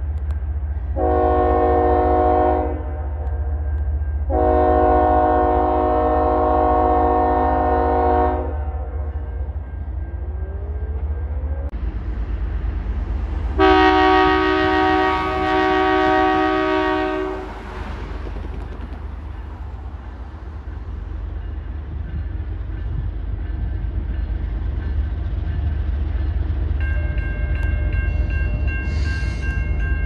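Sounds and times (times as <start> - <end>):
low train rumble: 0.0 - 30.0
locomotive air horn: 1.0 - 3.6, 4.3 - 9.0, 13.6 - 17.8.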